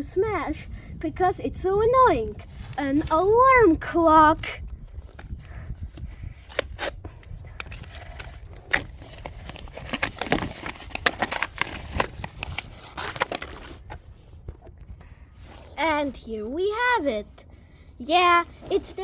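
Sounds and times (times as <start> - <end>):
packaging crackling and clicking: 6.5 - 14.0.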